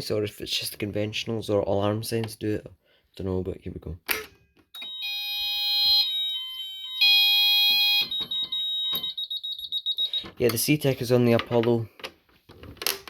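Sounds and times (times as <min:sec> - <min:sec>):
fire alarm high tones: 0:04.8 - 0:10.4.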